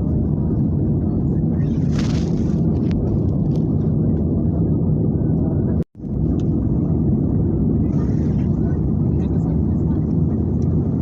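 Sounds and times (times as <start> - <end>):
aeroplane engine rumble: 0.0 - 11.0.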